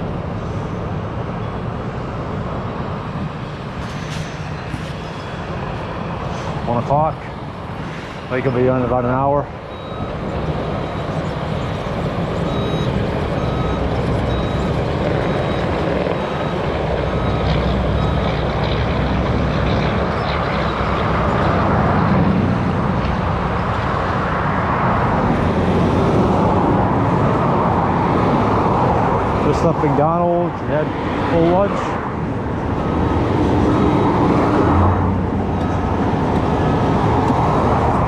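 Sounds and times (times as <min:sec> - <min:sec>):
car road and engine noise: 0:00.0 - 0:38.0.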